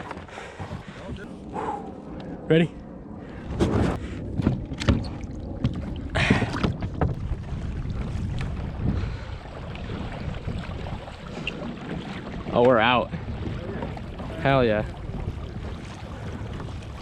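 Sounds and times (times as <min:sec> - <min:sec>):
water noise: 0:00.0 - 0:17.0
water splashing: 0:00.0 - 0:17.0
wind noise: 0:00.0 - 0:17.0
kayak hull scraping rocks: 0:03.4 - 0:05.2.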